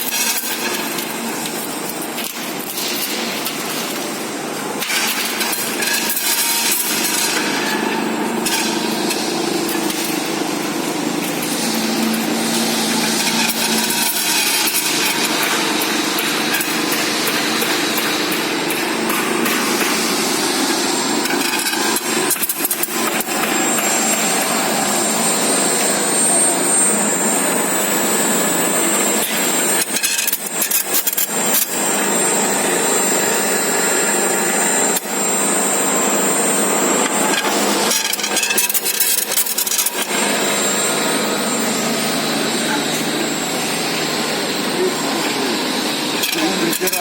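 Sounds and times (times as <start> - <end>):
duct machine running: 0.0 - 47.0
faint high whine: 22.8 - 37.8, 39.7 - 46.1.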